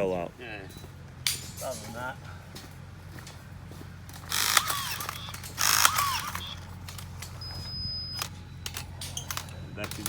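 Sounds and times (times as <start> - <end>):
clicks of wire and steel: 0.7 - 2.1, 4.1 - 7.4, 8.2 - 10.0
rebar tying tool whirring: 4.1 - 10.0.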